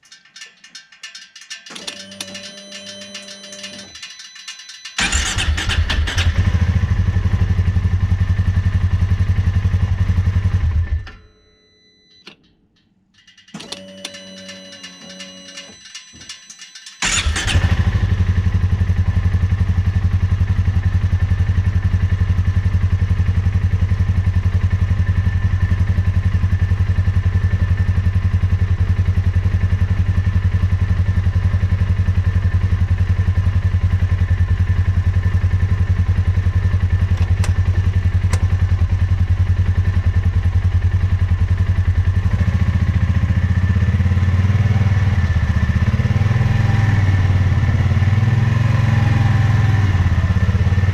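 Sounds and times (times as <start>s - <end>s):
single-cylinder engine idling: 5.0s - 11.0s, 17.0s - 46.1s.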